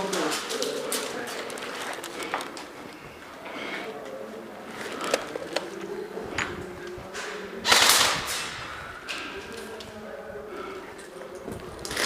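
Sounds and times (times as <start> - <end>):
airsoft guns firing: 7.6 - 8.7.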